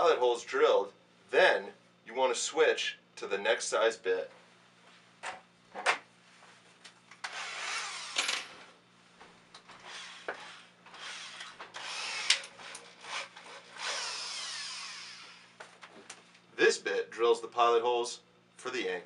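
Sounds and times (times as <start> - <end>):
power drill boring through drywall: 7.2 - 8.5, 9.8 - 15.6.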